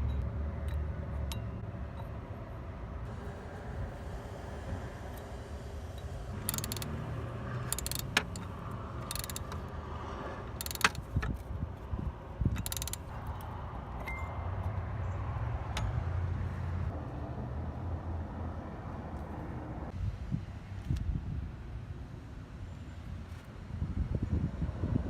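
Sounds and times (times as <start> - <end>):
low steady rumble: 1.2 - 14.0
metal tools clinking: 6.4 - 9.7, 10.5 - 11.2, 12.6 - 14.4.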